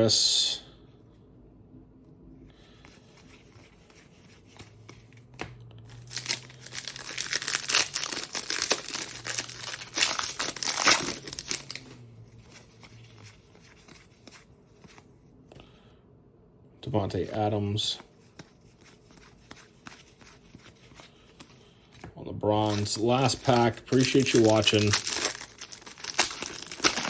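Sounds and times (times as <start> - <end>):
card pack wrapper tearing: 5.9 - 11.9, 22.6 - 27.0
wrapper crinkling and rustling: 5.9 - 11.9, 22.6 - 27.0.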